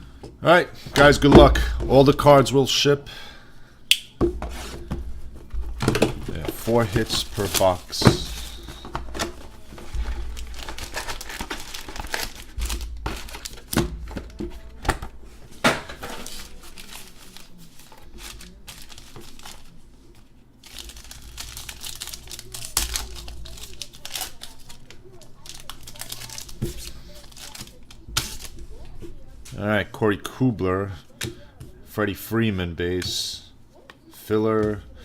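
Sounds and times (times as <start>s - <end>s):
sharp snaps: 3.9s - 4.2s
card packaging tearing and crinkling: 5.8s - 19.8s, 20.6s - 28.9s.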